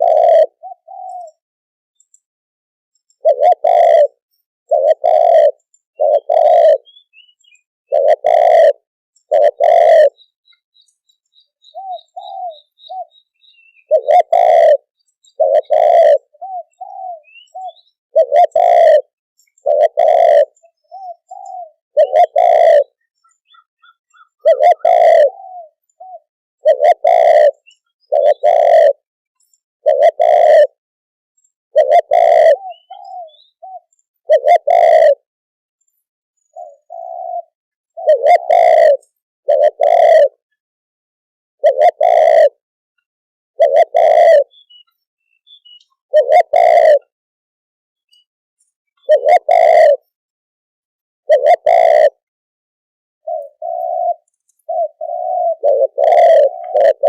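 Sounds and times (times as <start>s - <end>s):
dove cooing: 0.0s - 1.4s, 3.2s - 10.4s, 11.6s - 29.0s, 29.8s - 30.8s, 31.7s - 35.3s, 36.4s - 40.5s, 41.6s - 42.6s, 43.6s - 47.1s, 49.0s - 50.2s, 51.3s - 52.3s, 53.2s - 57.0s.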